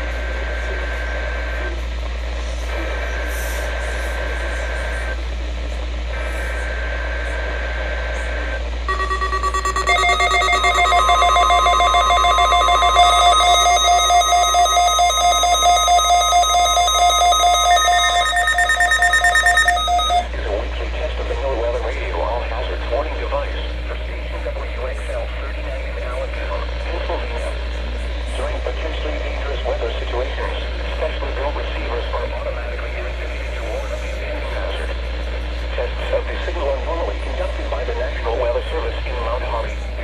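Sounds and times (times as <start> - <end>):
pulsing electronic alert beeps: 8.9 - 20.3
two-tone digital buzz: 8.9 - 20.3.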